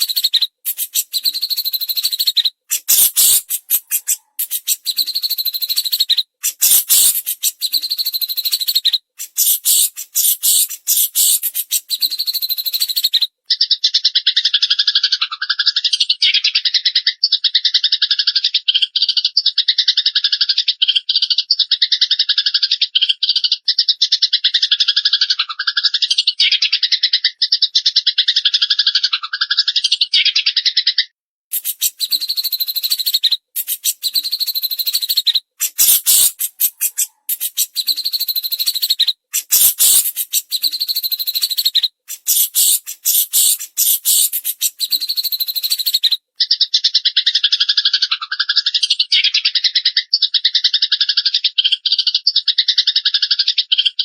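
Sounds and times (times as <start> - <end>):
bird fast pulsing trill: 0.0 - 8.6, 9.2 - 12.2, 31.6 - 38.8, 39.4 - 45.9
bird harsh high chatter: 0.0 - 13.2, 31.5 - 46.2.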